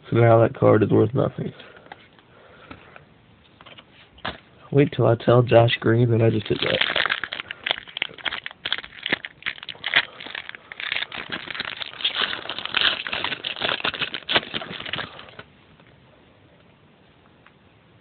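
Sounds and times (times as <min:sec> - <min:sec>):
card pack wrapper crinkling: 0:06.2 - 0:15.5.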